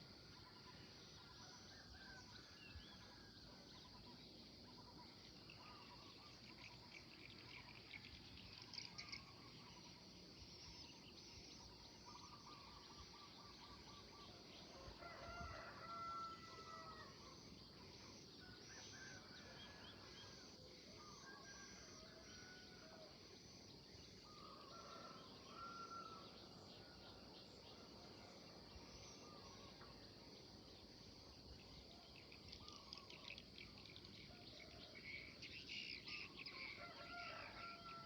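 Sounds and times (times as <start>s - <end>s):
birds chirping and trilling: 31.1s - 38.0s.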